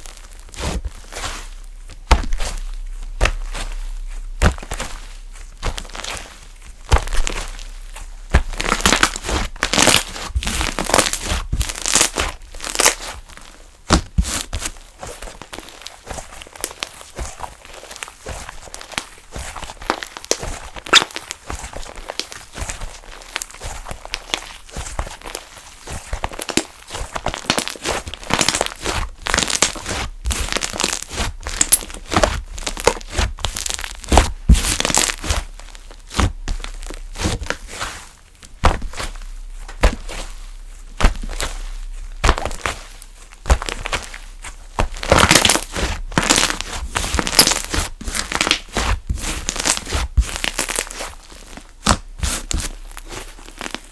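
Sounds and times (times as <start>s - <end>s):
slime clicking and popping: 44.8s - 51.1s.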